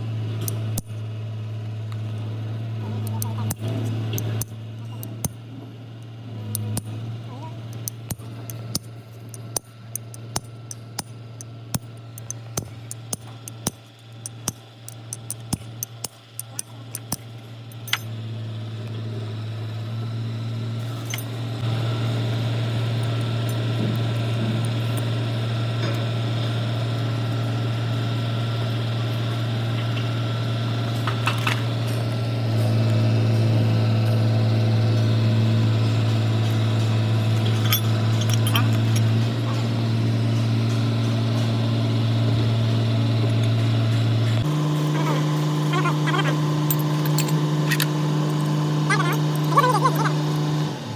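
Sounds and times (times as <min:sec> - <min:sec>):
low mechanical hum: 0:00.0 - 0:50.9
sharp metallic clicks and taps: 0:07.7 - 0:18.0.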